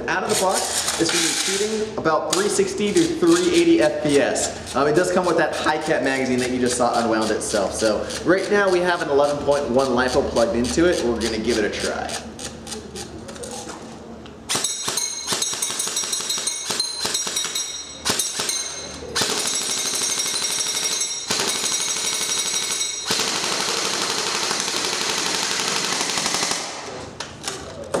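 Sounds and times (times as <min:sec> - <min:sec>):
airsoft gun firing: 0:14.5 - 0:27.0.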